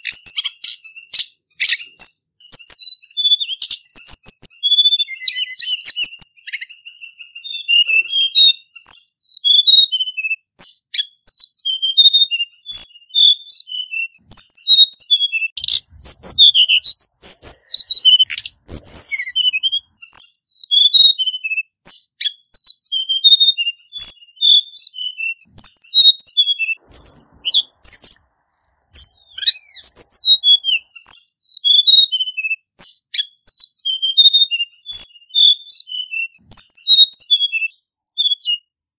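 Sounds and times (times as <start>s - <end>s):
bird singing warbled notes: 15.6s - 21.4s, 24.9s - 32.3s.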